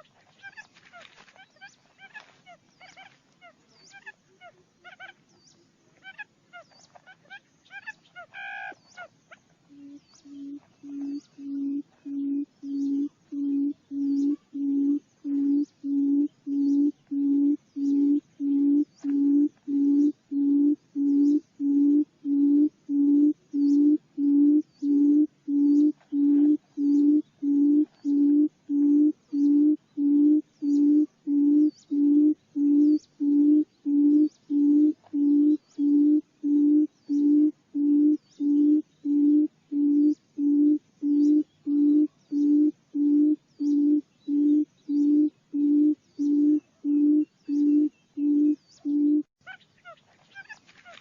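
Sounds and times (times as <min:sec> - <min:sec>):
bird booming hoots: 0:09.7 - 0:49.3.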